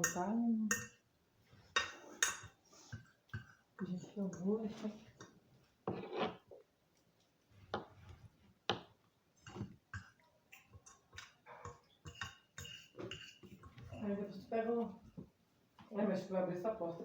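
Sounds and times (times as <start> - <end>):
cutlery clinking on a plate: 0.0 - 1.0, 9.4 - 13.8.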